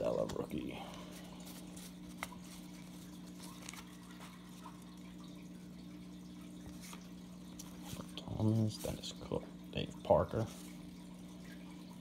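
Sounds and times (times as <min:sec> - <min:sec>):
faint steady hum: 0:00.0 - 0:12.0
cards being flipped by hand: 0:01.2 - 0:04.7, 0:06.6 - 0:08.2.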